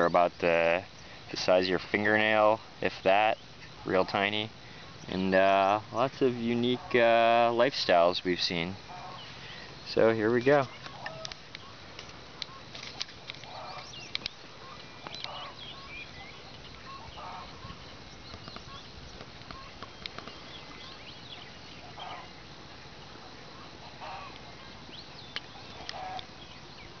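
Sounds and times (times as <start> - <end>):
steady background hiss: 0.0 - 27.0
domestic fowl calling: 3.1 - 8.1, 8.8 - 9.8, 10.5 - 24.8, 25.6 - 26.4
small clicks and chirps: 10.6 - 15.5, 16.4 - 16.9, 18.1 - 21.0, 25.2 - 26.4.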